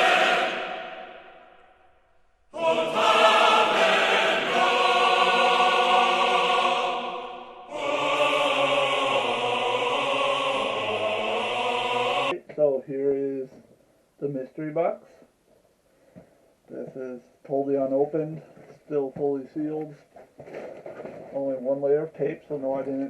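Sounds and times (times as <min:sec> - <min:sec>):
long held music chords: 0:02.6 - 0:12.3.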